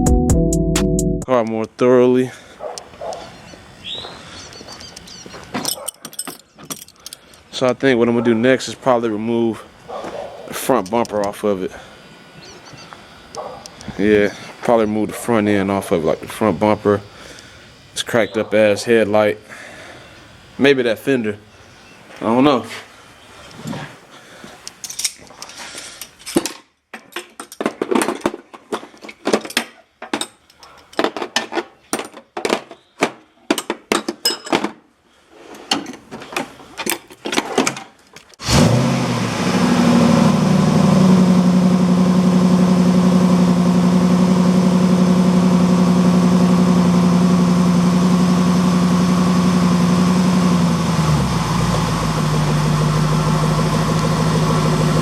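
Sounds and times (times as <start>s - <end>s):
car engine starting and idling: 38.4s - 55.0s.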